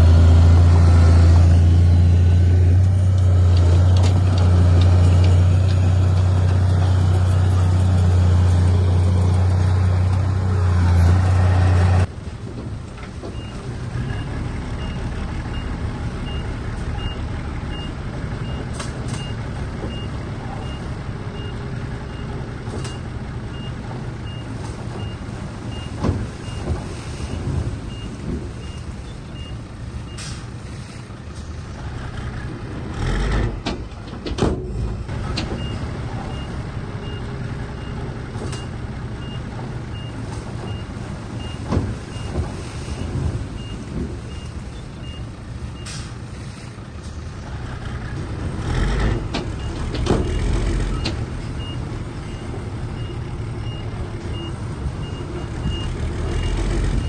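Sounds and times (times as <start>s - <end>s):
heavy diesel engine running: 0.0s - 57.0s
heavy metal clanks and thumps: 32.2s - 36.5s, 48.0s - 57.0s.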